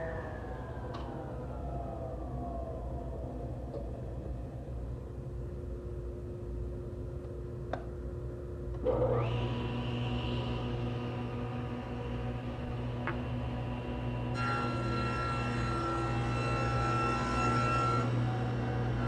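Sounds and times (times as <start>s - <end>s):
low hum: 0.0s - 17.2s
machine motor whine: 8.8s - 19.0s.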